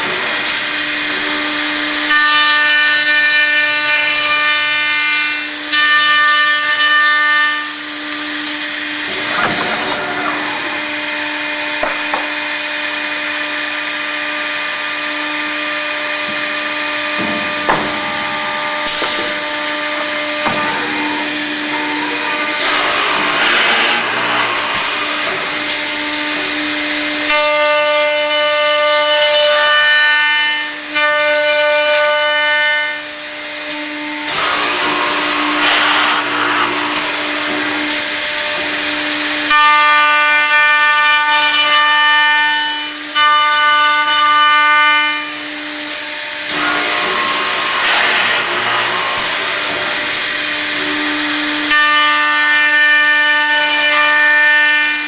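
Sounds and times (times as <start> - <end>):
wood cutting noise: 0.0 - 55.0
high machine whine: 8.9 - 27.3, 45.8 - 52.0
machine motor hum: 9.0 - 27.2, 34.3 - 39.4, 46.2 - 51.7.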